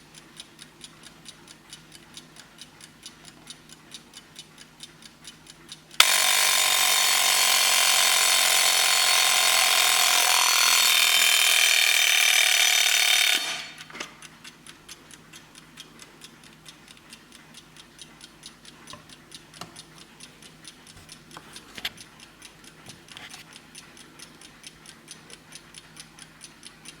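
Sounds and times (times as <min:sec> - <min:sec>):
clock ticking: 0:00.0 - 0:27.0
alarm clock bell ringing: 0:06.0 - 0:13.7.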